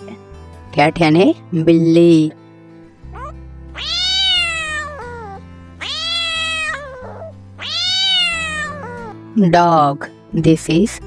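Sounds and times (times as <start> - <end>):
light background music: 0.0 - 11.0
cat meowing: 3.1 - 9.2.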